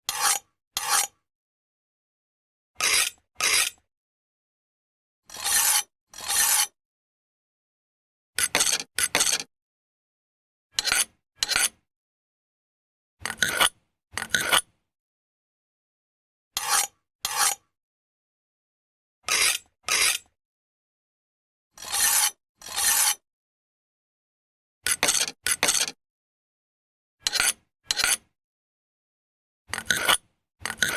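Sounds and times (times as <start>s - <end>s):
knife scraping on sharpener: 0.0s - 1.2s, 2.8s - 3.9s, 5.3s - 6.8s, 8.4s - 9.5s, 10.8s - 11.8s, 13.2s - 14.7s, 16.6s - 17.7s, 19.3s - 20.4s, 21.8s - 23.2s, 24.8s - 26.0s, 27.2s - 28.3s, 29.7s - 30.9s.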